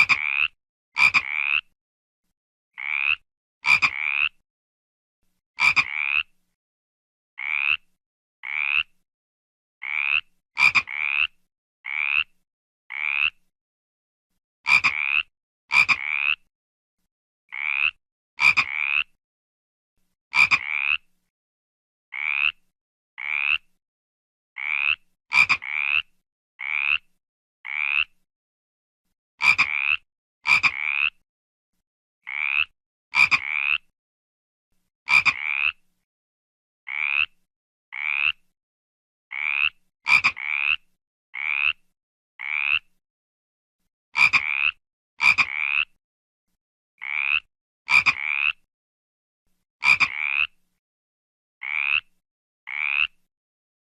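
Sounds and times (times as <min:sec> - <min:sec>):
frog croaking: 0:00.0 - 0:01.7, 0:02.8 - 0:04.4, 0:05.6 - 0:06.3, 0:07.4 - 0:08.9, 0:09.8 - 0:13.4, 0:14.7 - 0:16.4, 0:17.5 - 0:19.2, 0:20.4 - 0:21.1, 0:22.2 - 0:22.6, 0:23.2 - 0:23.7, 0:24.6 - 0:27.1, 0:27.7 - 0:28.2, 0:29.4 - 0:31.2, 0:32.3 - 0:33.9, 0:35.1 - 0:35.8, 0:36.9 - 0:37.4, 0:38.0 - 0:38.4, 0:39.3 - 0:41.8, 0:42.4 - 0:42.9, 0:44.2 - 0:45.9, 0:47.0 - 0:48.7, 0:49.8 - 0:50.6, 0:51.6 - 0:52.1, 0:52.7 - 0:53.2.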